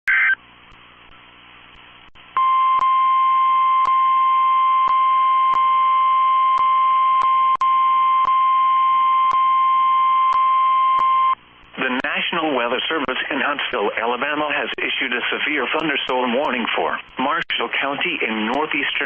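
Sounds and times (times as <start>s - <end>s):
faint radio hiss: 0.1s - 2.4s, 11.4s - 19.0s
static clicks: 0.1s - 2.9s, 6.5s - 8.4s, 10.3s - 12.1s
steady high alarm beep: 2.4s - 11.4s.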